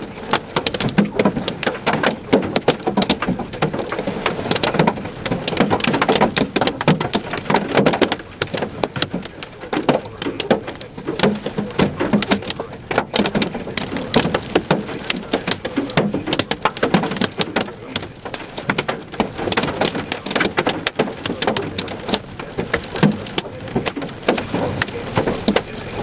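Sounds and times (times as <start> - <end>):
hail and rain pelting car roof: 0.0 - 26.0.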